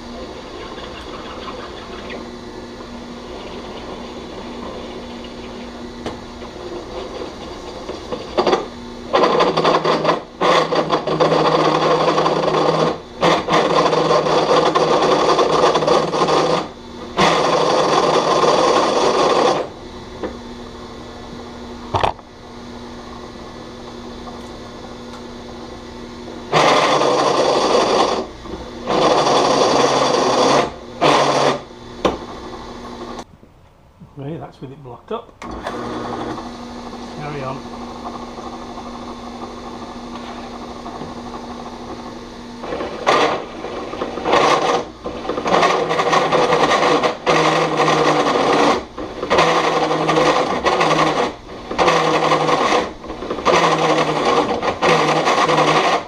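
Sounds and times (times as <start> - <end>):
step drill cutting metal plate: 0.0 - 19.8, 26.5 - 33.2, 35.4 - 56.0
drill press motor running: 0.0 - 33.3, 35.4 - 56.0.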